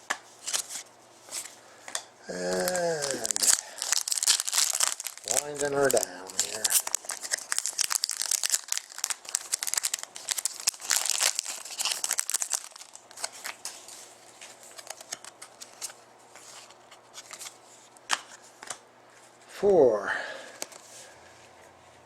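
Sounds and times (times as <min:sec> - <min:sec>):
wrapper crinkling and tearing: 0:02.3 - 0:16.0.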